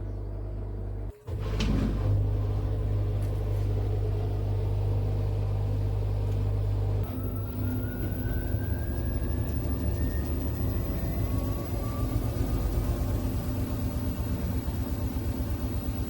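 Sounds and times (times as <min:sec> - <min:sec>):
machine humming: 0:00.0 - 0:16.0
motor whining rising in pitch: 0:07.0 - 0:16.0.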